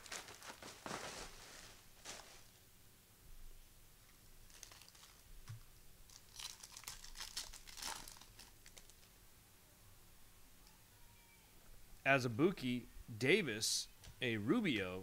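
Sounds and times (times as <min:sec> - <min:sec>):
foil wrapper crinkling and tearing: 0:00.0 - 0:02.5, 0:04.5 - 0:05.3, 0:06.1 - 0:09.1.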